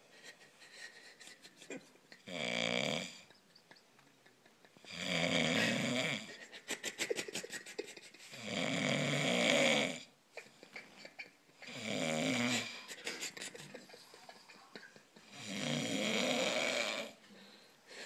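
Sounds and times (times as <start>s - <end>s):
heavy snoring: 2.3s - 3.2s, 4.9s - 6.3s, 8.3s - 10.1s, 11.7s - 12.8s, 15.3s - 17.2s.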